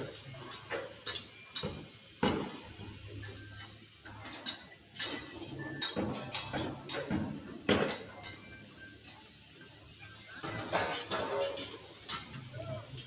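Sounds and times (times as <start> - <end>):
metallic clinks and knocks: 0.1 - 8.5.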